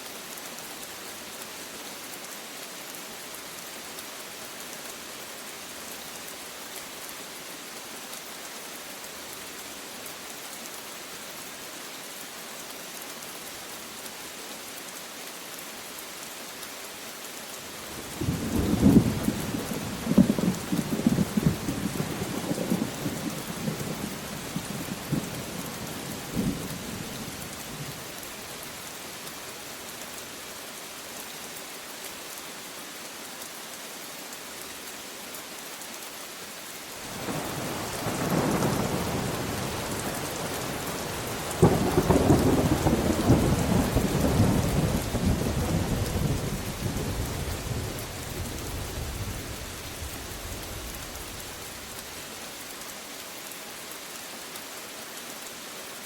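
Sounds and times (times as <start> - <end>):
steady rain falling: 0.0 - 56.0
thunder rumbling: 40.7 - 51.5.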